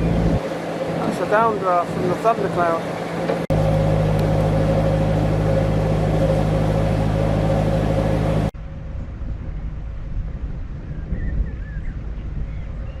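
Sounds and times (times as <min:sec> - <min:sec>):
boat engine humming: 0:00.0 - 0:08.6.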